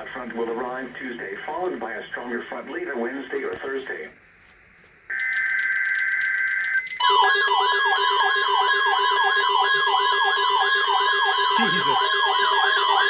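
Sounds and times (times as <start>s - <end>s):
warbling siren-like alarm sweeps: 7.0s - 13.0s
screeching digital data burst: 11.1s - 13.0s
steady alert tone: 11.5s - 12.1s.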